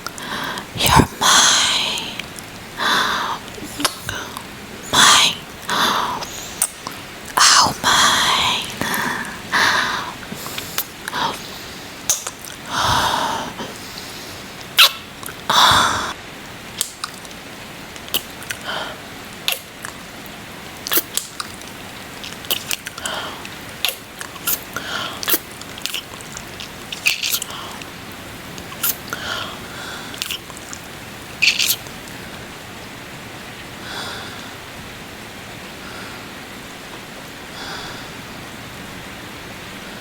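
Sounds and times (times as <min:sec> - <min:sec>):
steady hiss: 0:00.0 - 0:40.0
wet lip smacks: 0:23.8 - 0:27.6, 0:28.6 - 0:29.0, 0:30.2 - 0:30.8, 0:31.4 - 0:31.9.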